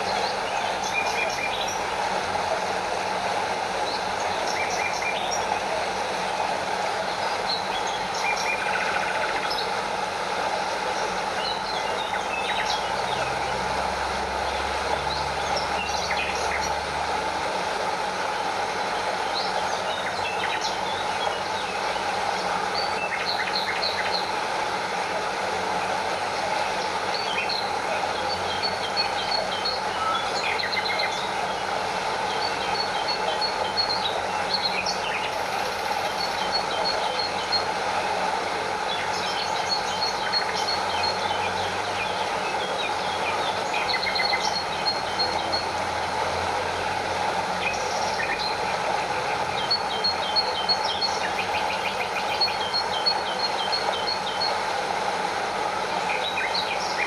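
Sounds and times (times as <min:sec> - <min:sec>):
stream and small waterfall rushing: 0:00.0 - 0:57.0
birds chirping: 0:25.9 - 0:54.8.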